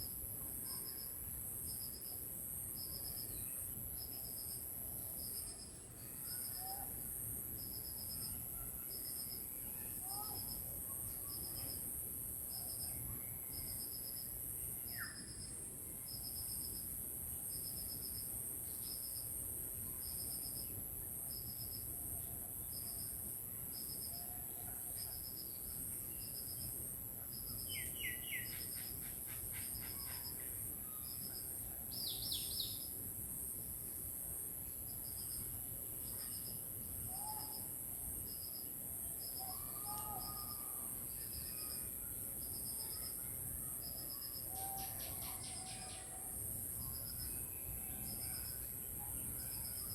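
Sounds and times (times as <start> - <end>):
high insect hiss: 0.0 - 24.3, 25.0 - 49.9
faint bird chirps: 27.3 - 32.9, 36.0 - 37.7, 39.3 - 49.9.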